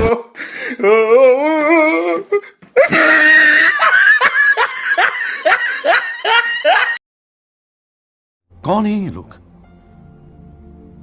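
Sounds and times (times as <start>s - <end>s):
high-pitched laughter: 2.8s - 7.0s.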